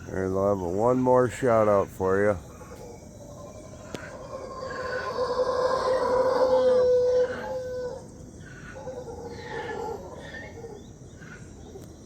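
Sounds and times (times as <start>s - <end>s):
howler monkeys howling: 0.0s - 12.0s.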